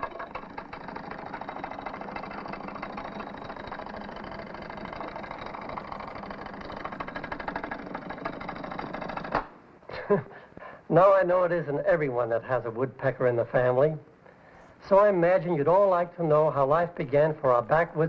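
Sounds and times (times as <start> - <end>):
rapid mechanical rattle: 0.0 - 9.6.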